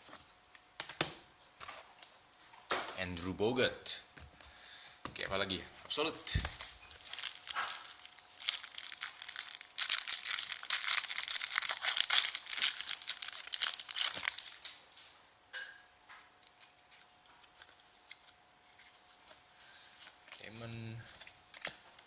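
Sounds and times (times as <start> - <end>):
plastic packaging tearing and crinkling: 6.3 - 14.8.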